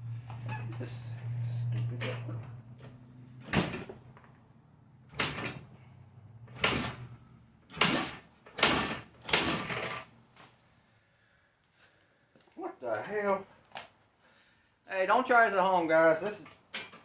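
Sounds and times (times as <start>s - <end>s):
motorcycle kickstarter clatter: 1.8s - 4.4s, 5.1s - 5.7s, 6.5s - 10.5s.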